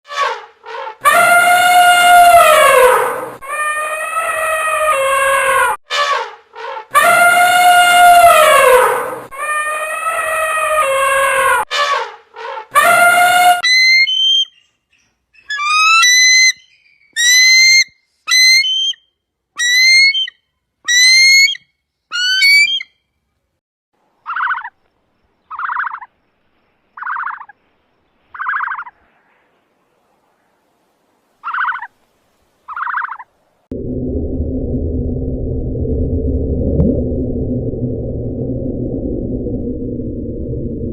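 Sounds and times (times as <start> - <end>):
high whistled animal calls: 13.6 - 14.7, 15.4 - 23.0, 31.4 - 31.9, 32.7 - 33.3.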